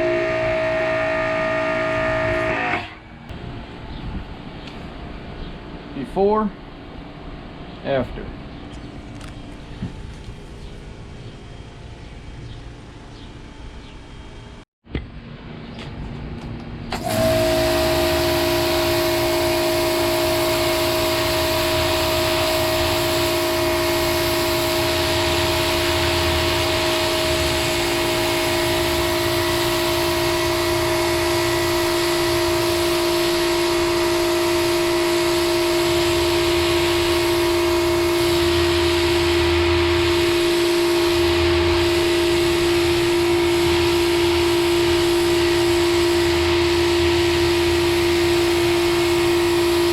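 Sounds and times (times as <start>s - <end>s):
electric pressure washer running: 0.0s - 3.1s, 16.9s - 49.9s
high-pressure water spray hissing: 17.0s - 49.9s.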